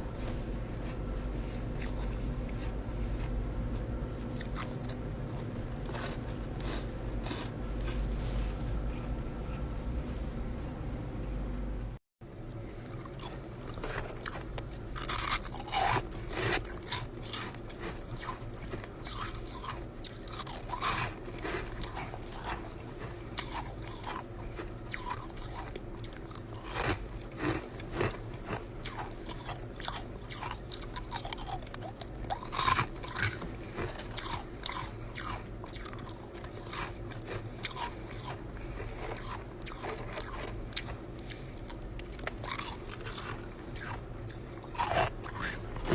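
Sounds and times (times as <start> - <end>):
ice being bitten and chewed: 0.3 - 9.2, 12.7 - 45.9.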